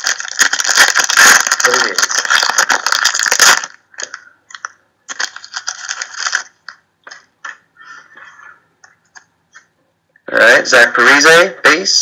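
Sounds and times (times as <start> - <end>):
foil wrapper crinkling: 0.0 - 7.3.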